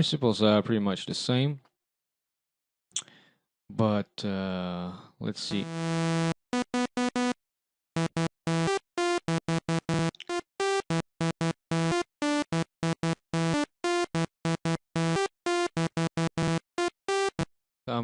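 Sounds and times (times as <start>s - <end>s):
buzzy staccato synthesizer melody: 5.5s - 7.4s, 8.0s - 17.5s.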